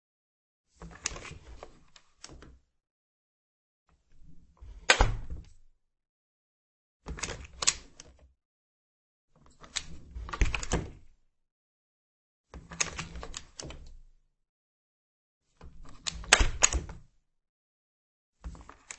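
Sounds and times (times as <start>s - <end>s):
door latch and handle clicks: 16.0s - 17.0s.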